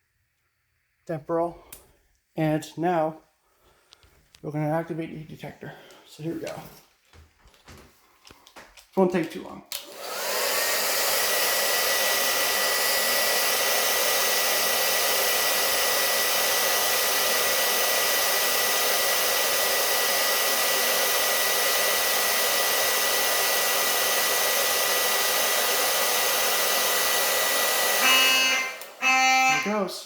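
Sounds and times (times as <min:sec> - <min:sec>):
hair dryer running: 0:09.7 - 0:30.0.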